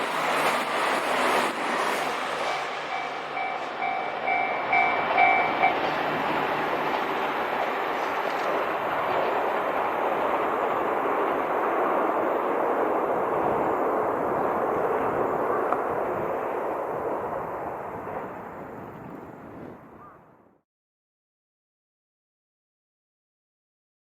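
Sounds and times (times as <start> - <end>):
steady rushing noise: 0.0 - 19.8
passing train: 0.0 - 20.6
level crossing bell ringing: 2.6 - 5.8.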